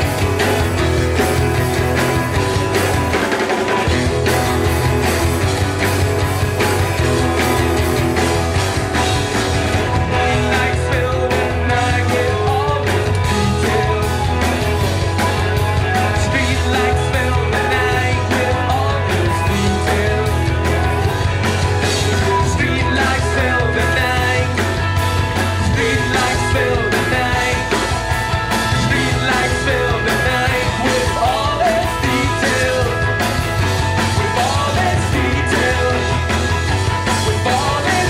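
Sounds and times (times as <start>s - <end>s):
live rock band playing: 0.0s - 38.0s
steady drum beat: 0.0s - 38.0s
person singing: 9.9s - 14.8s, 15.9s - 21.2s, 21.9s - 24.8s, 25.7s - 28.0s, 28.7s - 33.2s, 34.0s - 36.5s, 37.1s - 38.0s.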